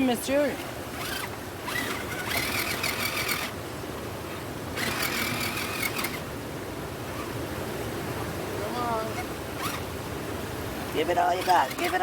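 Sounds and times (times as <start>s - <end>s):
toy car electric motor whining: 1.0s - 3.6s, 4.8s - 6.2s, 9.1s - 9.8s, 11.4s - 12.0s.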